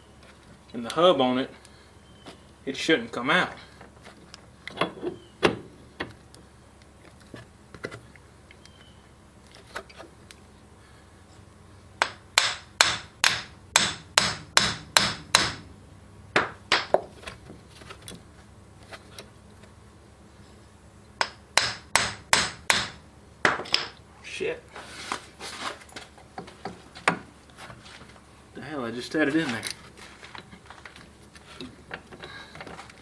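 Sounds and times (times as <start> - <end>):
hammer striking metal: 12.0 - 15.6, 21.2 - 24.0.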